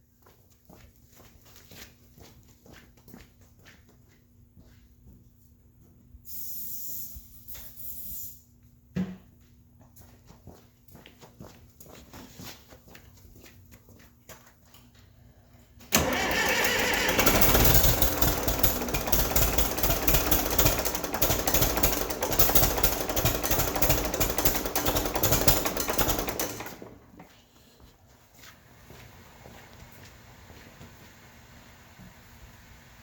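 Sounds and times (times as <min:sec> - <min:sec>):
starter motor cranking diesel engine: 0:15.9 - 0:27.2.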